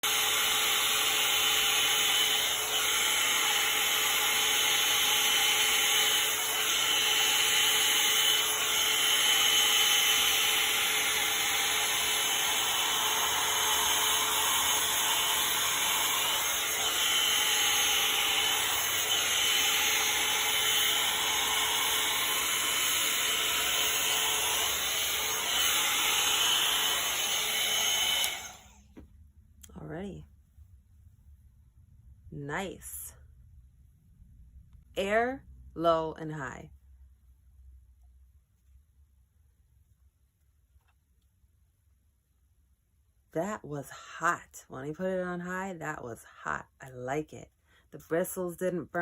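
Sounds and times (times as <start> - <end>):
hair dryer brush running: 0.0 - 29.0.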